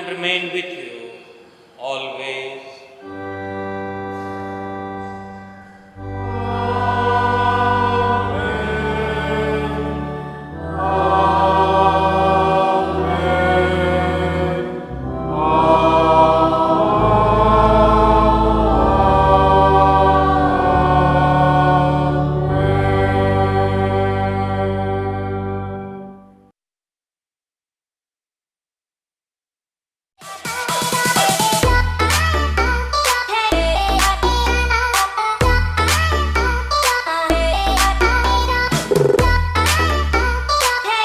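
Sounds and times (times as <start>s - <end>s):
choir singing held chords: 1.8s - 26.3s.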